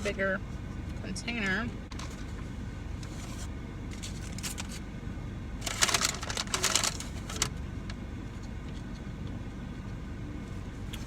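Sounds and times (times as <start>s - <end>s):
air conditioning hum: 0.0s - 11.0s
plastic container crackling: 5.6s - 7.5s.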